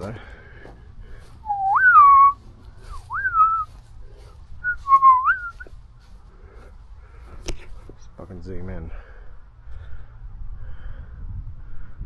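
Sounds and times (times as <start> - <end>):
man whistling: 1.4 - 3.7, 4.6 - 5.7.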